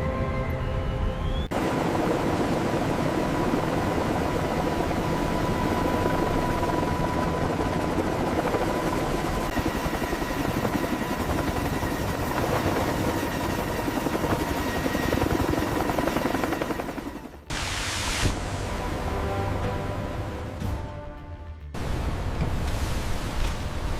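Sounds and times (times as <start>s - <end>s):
helicopter rotor chopping: 1.5s - 17.6s.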